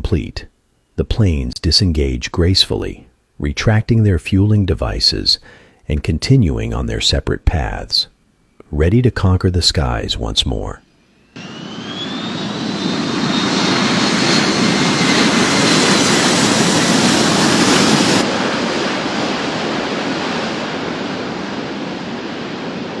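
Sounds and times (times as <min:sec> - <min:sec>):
jet engine roar: 0:11.2 - 0:23.0.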